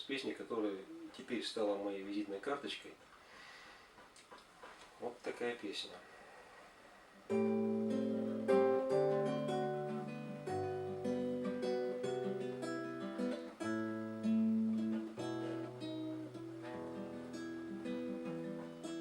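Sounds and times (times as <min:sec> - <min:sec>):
acoustic guitar playing: 0:07.3 - 0:19.0.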